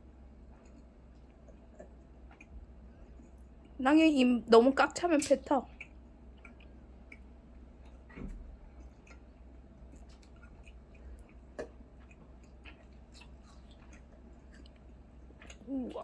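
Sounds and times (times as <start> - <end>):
children chewing wetly: 0.0 - 3.8, 5.2 - 16.0.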